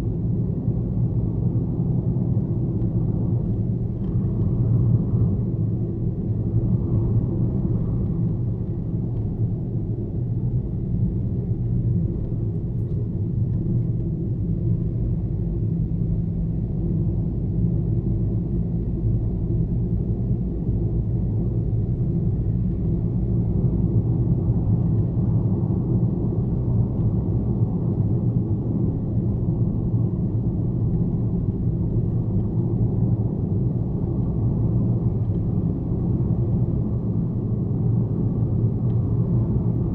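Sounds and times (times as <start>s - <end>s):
car driving on highway: 0.0s - 39.9s.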